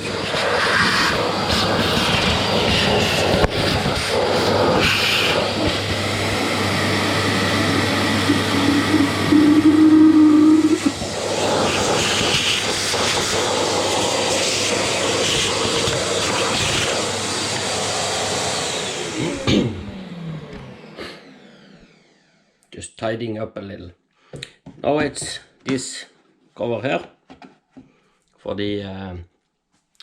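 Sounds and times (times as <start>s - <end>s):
vacuum cleaner running: 0.0s - 22.6s.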